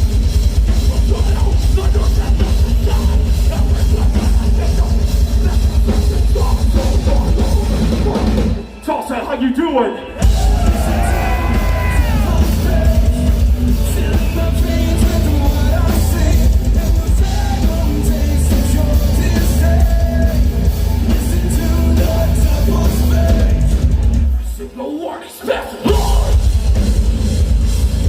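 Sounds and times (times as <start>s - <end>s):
heavy bass: 0.0s - 8.7s, 10.0s - 24.5s, 25.8s - 28.0s
pounding drum kit: 0.0s - 9.0s, 10.1s - 24.6s, 25.7s - 28.0s
distorted guitars: 0.0s - 28.0s
person singing: 10.2s - 23.8s.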